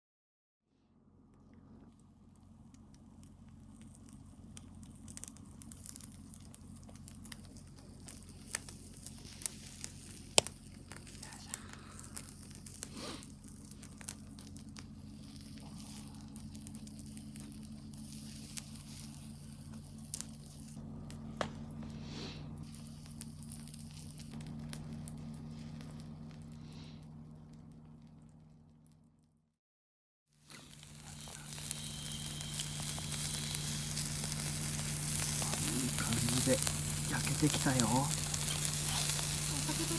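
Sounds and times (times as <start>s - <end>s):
steady low hum: 0.8s - 29.2s, 30.4s - 39.9s
campfire crackling and popping: 2.0s - 29.2s, 30.4s - 39.9s.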